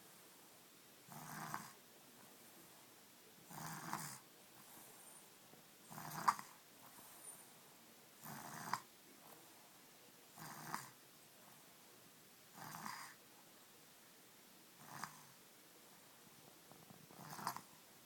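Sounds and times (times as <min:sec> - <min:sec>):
person snoring: 0:03.5 - 0:04.2, 0:05.9 - 0:06.5.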